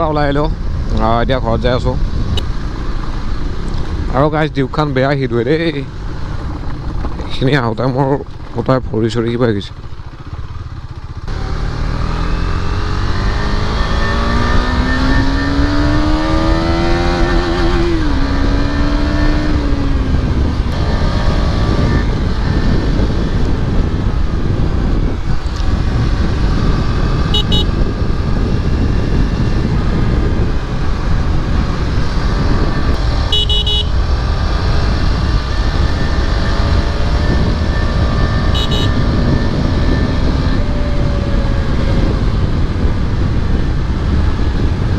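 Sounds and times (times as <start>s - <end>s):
road and wind noise: 0.0s - 44.9s
motorcycle engine accelerating: 0.6s - 44.9s
vehicle horn beeps: 27.3s - 27.7s, 33.3s - 34.0s, 38.4s - 39.1s.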